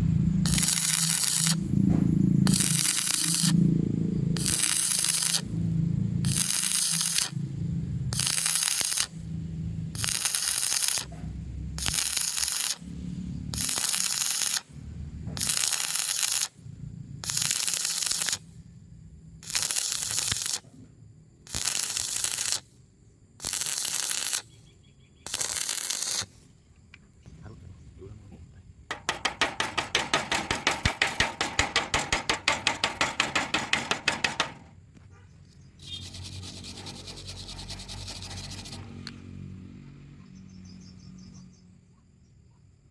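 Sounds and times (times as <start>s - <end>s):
welding arc crackling: 0.0s - 1.8s, 2.4s - 9.3s, 9.9s - 11.1s, 11.8s - 14.7s, 15.4s - 16.6s, 17.2s - 18.5s, 19.4s - 20.6s, 21.5s - 22.6s, 23.4s - 24.5s, 25.3s - 26.4s, 28.9s - 34.6s.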